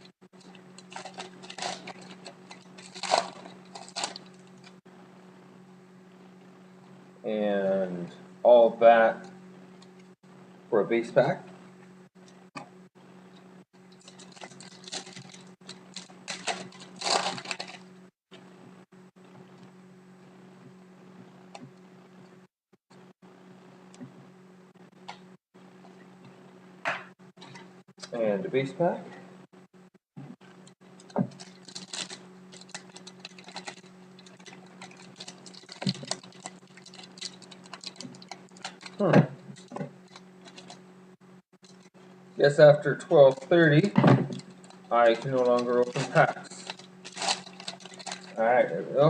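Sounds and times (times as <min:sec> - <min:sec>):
steady low hum: 0:00.0 - 0:49.0
card pack wrapper crinkling: 0:00.4 - 0:04.7, 0:14.0 - 0:17.9, 0:31.0 - 0:39.0, 0:39.6 - 0:40.8, 0:44.3 - 0:48.4.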